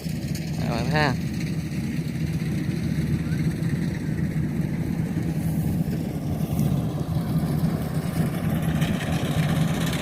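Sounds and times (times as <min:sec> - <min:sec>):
combine harvester engine hum: 0:00.0 - 0:10.0.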